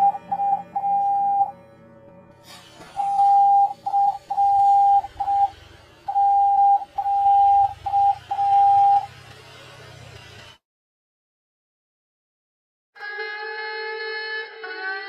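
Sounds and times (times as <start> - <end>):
beep tone in long and short beeps: 0.0 - 1.6, 3.0 - 9.1.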